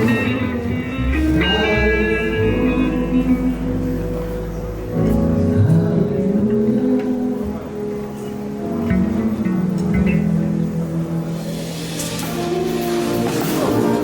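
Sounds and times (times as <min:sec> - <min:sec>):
deep held bass tone: 0:00.0 - 0:14.0
guitar chords and notes: 0:00.0 - 0:14.0.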